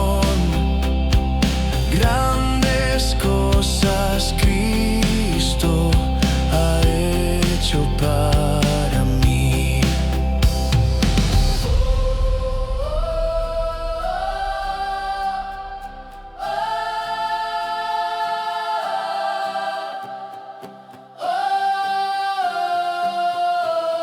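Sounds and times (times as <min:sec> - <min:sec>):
band low end: 0:00.0 - 0:17.3
choir holding sustained chords: 0:11.6 - 0:23.0.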